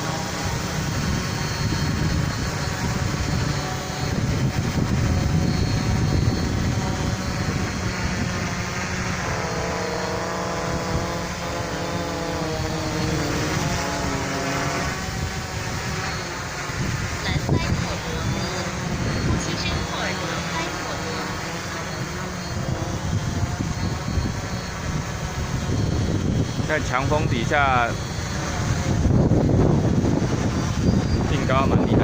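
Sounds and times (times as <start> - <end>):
quadcopter motors whining: 0.0 - 32.0
wind buffeting microphone: 0.0 - 32.0.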